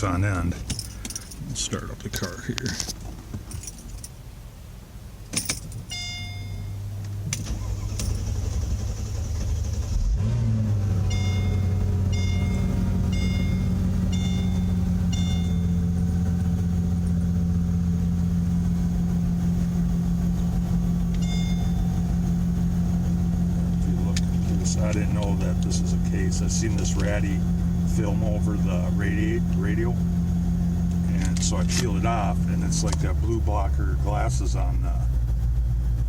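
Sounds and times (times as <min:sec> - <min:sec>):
car engine starting and idling: 0:00.0 - 0:36.0
low hum: 0:00.0 - 0:36.0
dashboard chime beeping: 0:05.9 - 0:06.9, 0:11.0 - 0:16.0, 0:21.1 - 0:22.0.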